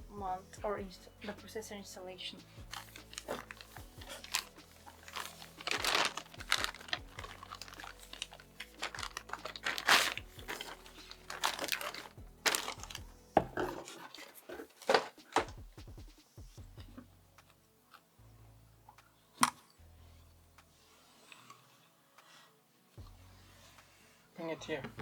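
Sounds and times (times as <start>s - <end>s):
plastic packaging crinkling: 2.4s - 15.6s
knocks of handling: 2.6s - 17.1s.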